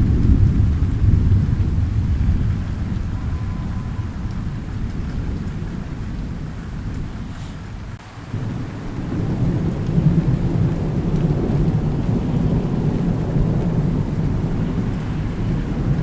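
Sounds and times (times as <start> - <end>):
rolling thunder: 0.0 - 16.0
steady rain: 0.0 - 16.0.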